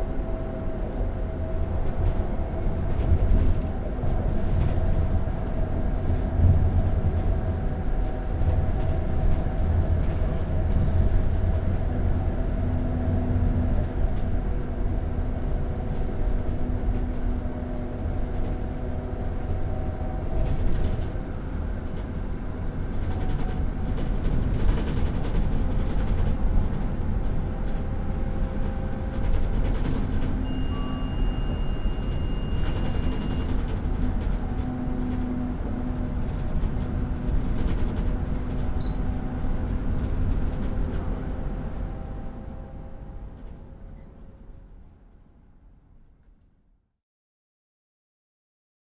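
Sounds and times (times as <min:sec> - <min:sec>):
bus engine rumble: 0:00.0 - 0:45.5.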